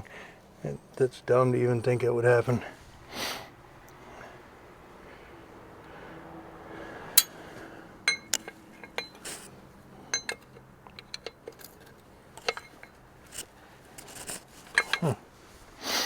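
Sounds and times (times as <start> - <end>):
metal parts clinking: 7.2 - 7.4, 8.1 - 15.2.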